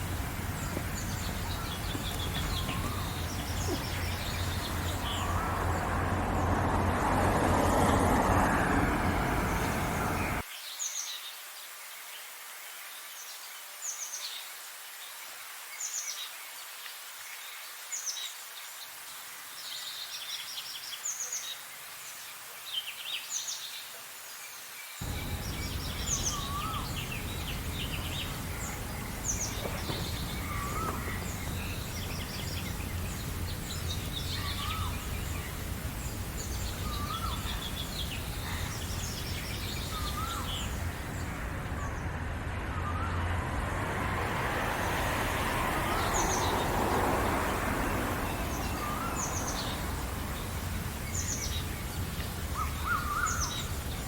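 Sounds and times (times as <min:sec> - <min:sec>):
birds chirping and singing: 0:00.0 - 0:10.4, 0:25.0 - 0:43.2, 0:45.8 - 0:54.0
hiss: 0:25.0 - 0:41.7, 0:43.9 - 0:54.0.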